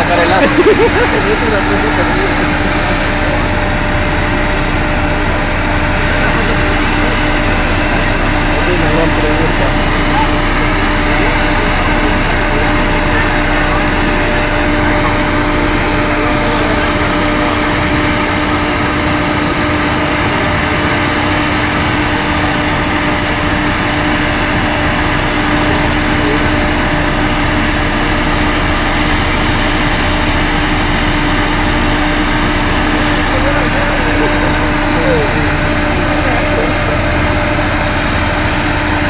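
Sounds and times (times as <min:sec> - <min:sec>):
constant hum: 0:00.0 - 0:39.0
drilling rig engine drone: 0:00.0 - 0:39.0.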